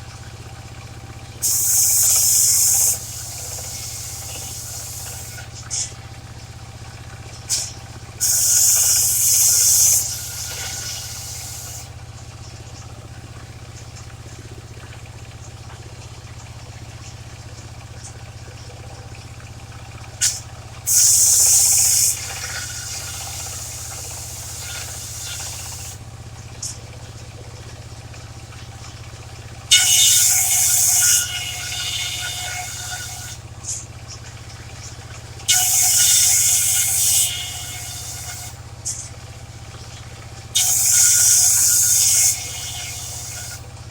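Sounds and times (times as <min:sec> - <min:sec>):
sawmill engine and blade drone: 0:01.3 - 0:06.0, 0:07.4 - 0:12.0, 0:20.2 - 0:26.8, 0:28.5 - 0:43.9
saw blade rasping into wood: 0:01.4 - 0:05.5, 0:07.5 - 0:11.9, 0:29.7 - 0:33.4, 0:35.5 - 0:39.0, 0:40.6 - 0:43.7.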